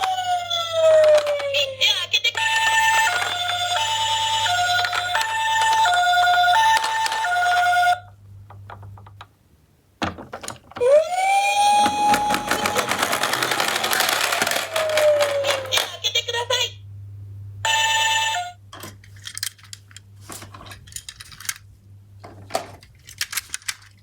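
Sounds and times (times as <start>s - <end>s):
rising and falling toy siren: 0.0s - 8.0s, 10.8s - 15.9s
two-tone toy siren: 0.0s - 8.0s, 10.8s - 15.9s, 17.7s - 18.6s.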